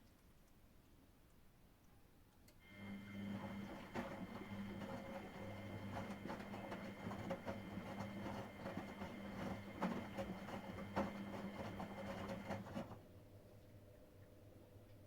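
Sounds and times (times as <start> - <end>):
washing machine motor hum: 2.6 - 13.2
knocks and clicks of tumbling load: 3.2 - 13.0.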